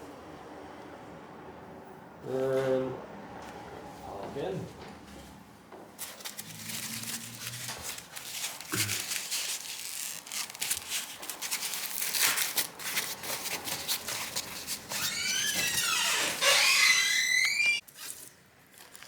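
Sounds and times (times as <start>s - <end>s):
high squeaks: 14.9s - 17.8s.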